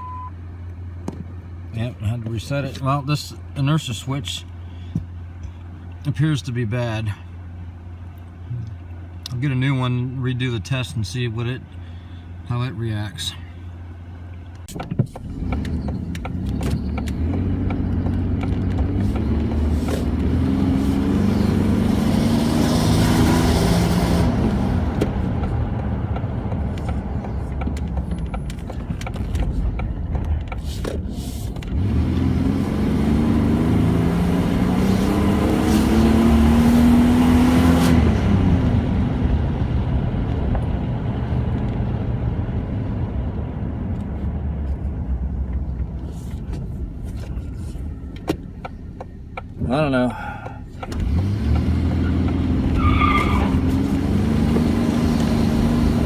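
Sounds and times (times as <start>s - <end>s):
car engine revving: 15.0s - 44.8s, 50.8s - 56.0s.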